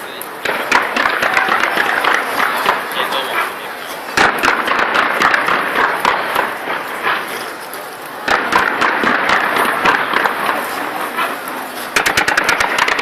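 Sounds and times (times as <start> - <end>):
crowd cheering and chatter: 0.0 - 13.0
fireworks bangs and crackles: 0.0 - 13.0.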